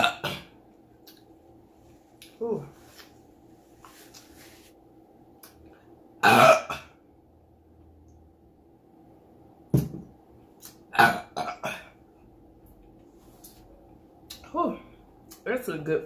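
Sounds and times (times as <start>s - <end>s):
woman burping loudly: 6.2s - 6.9s, 10.9s - 12.0s.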